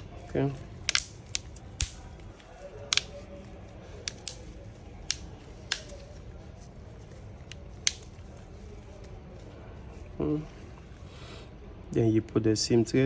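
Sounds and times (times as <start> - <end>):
plastic phone cover clicks: 0.8 - 2.1, 2.8 - 3.2, 4.0 - 6.1.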